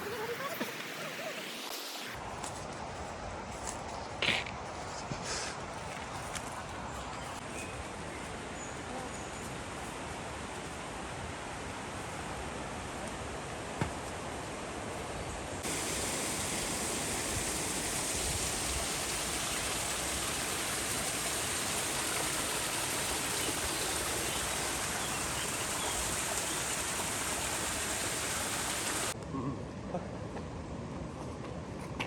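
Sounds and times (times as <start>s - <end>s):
rushing water: 9.3s - 29.2s.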